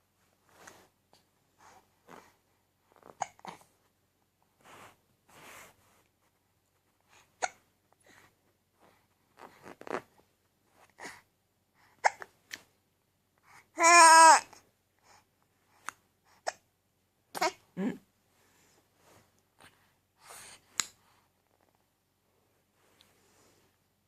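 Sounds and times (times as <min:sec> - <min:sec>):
soft breaths: 0:00.1 - 0:12.4, 0:14.4 - 0:16.7, 0:17.6 - 0:24.0
baby hiccupping: 0:17.3 - 0:17.6.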